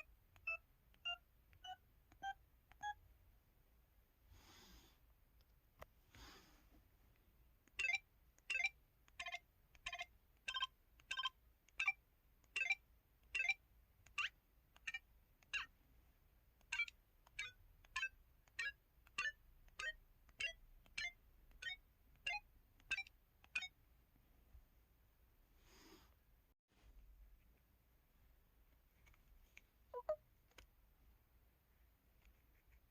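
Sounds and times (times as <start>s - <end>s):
phone keypad beeps: 0.0s - 3.0s, 7.8s - 12.0s, 30.0s - 30.2s.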